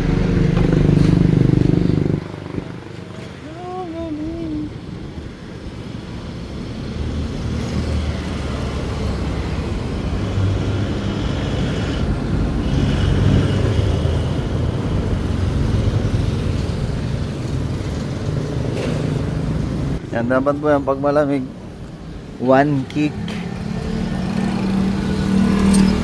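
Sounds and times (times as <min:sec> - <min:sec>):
motorcycle engine running: 0:00.0 - 0:03.7.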